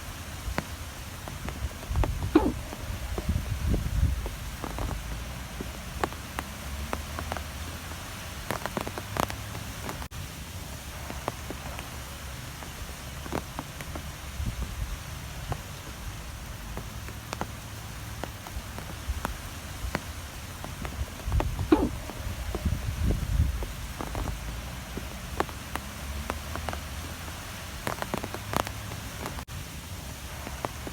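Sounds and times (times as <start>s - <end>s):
strong wind rumbling: 1.4s - 6.6s, 20.6s - 25.4s
sharp ticks and taps: 4.2s - 10.1s, 16.6s - 22.7s.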